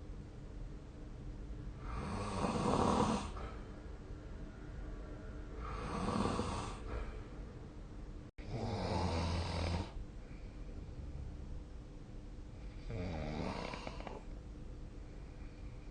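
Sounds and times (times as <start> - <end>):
quiet breathing: 1.7 - 7.6, 8.4 - 11.6, 12.5 - 15.9
person snoring: 1.8 - 3.4, 5.6 - 6.9, 8.4 - 10.0, 12.8 - 14.3.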